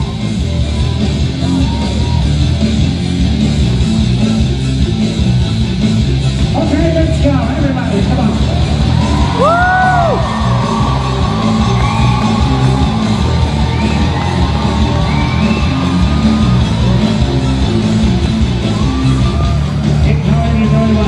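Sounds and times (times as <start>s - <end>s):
people shouting and whooping: 0.0s - 2.7s, 8.6s - 21.0s
loud show music with driving beat: 0.0s - 21.0s.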